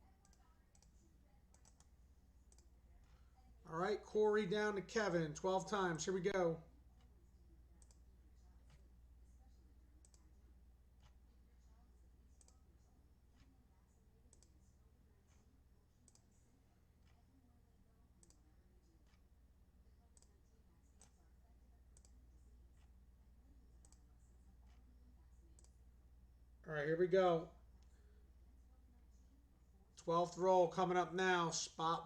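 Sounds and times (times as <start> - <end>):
low electrical hum: 0.0 - 32.0
computer mouse clicks: 0.2 - 3.2, 7.8 - 8.9, 10.0 - 10.4, 12.3 - 12.7, 14.3 - 14.7, 15.3 - 16.4, 18.1 - 19.3, 20.1 - 21.3, 21.9 - 22.9, 23.8 - 24.9, 25.5 - 25.8.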